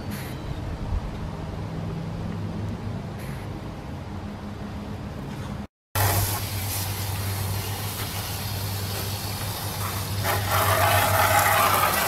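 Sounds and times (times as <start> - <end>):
hose spraying water: 6.0 - 12.0.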